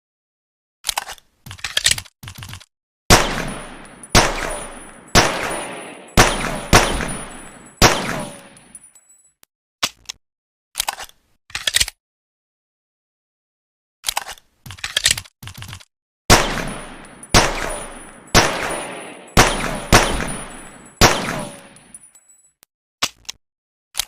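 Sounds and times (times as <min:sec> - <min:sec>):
pistol mechanical clicks: 0:03.1 - 0:08.7
gunshots with echo: 0:03.1 - 0:08.8, 0:16.3 - 0:22.0.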